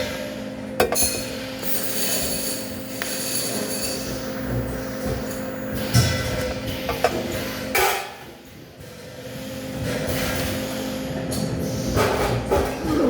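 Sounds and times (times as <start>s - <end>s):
machine hum: 0.0s - 7.8s.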